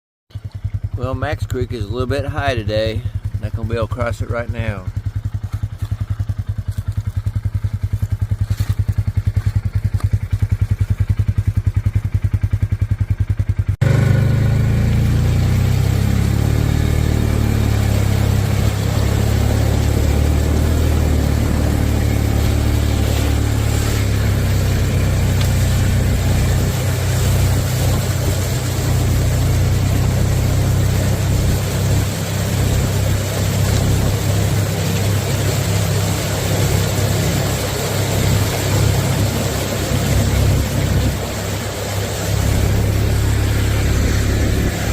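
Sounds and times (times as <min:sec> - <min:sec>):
engine idling: 0:00.3 - 0:44.9
heavy low rumble: 0:00.6 - 0:12.6, 0:13.8 - 0:44.9
steady rushing noise: 0:15.8 - 0:44.9.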